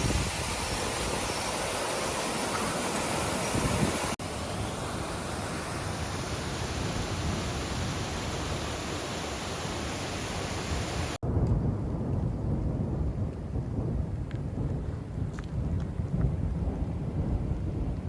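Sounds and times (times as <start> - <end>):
creek water rushing: 0.0 - 11.2
deep rumbling noise: 11.2 - 18.0.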